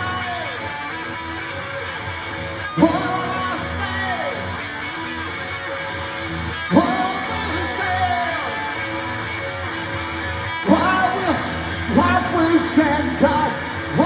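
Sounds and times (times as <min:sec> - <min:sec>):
man singing wordless phrases: 0:00.0 - 0:00.6, 0:02.8 - 0:04.5, 0:06.7 - 0:08.8, 0:10.6 - 0:14.0
strummed guitar: 0:00.0 - 0:14.0.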